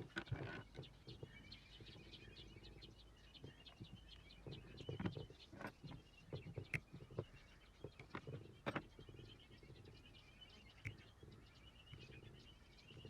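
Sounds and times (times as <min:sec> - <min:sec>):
faint clicks: 0:10.7 - 0:12.2.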